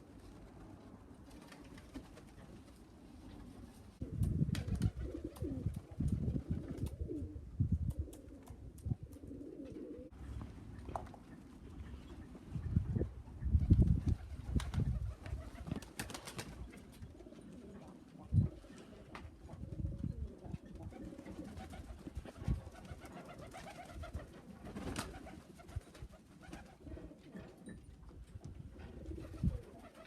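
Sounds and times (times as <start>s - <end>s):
pigeons cooing: 3.2s - 10.4s, 16.6s - 25.7s, 26.4s - 27.8s, 28.7s - 30.0s.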